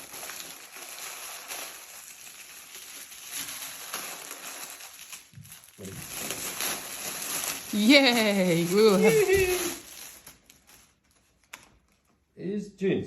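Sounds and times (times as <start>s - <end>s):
plastic packaging crinkling: 0.0s - 12.3s
clothing rustling: 2.9s - 12.2s.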